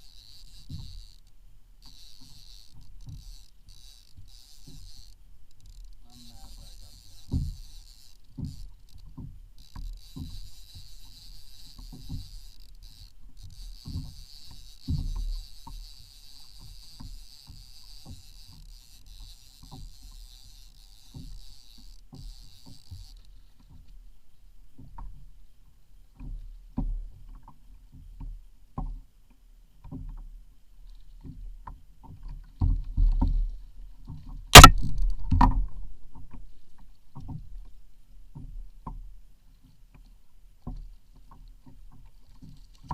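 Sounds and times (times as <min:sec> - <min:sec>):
paddle strokes in water: 0:00.0 - 0:42.9
sharp loud knock: 0:34.6 - 0:34.8.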